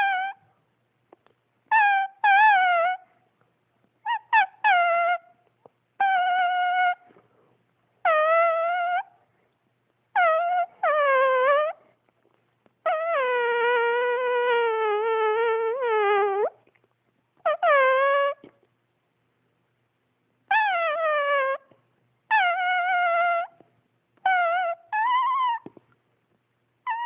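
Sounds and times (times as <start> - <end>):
cat yowling: 0.0 - 0.4, 1.7 - 3.1, 10.2 - 11.8, 20.5 - 21.6, 22.3 - 23.6, 24.3 - 25.7.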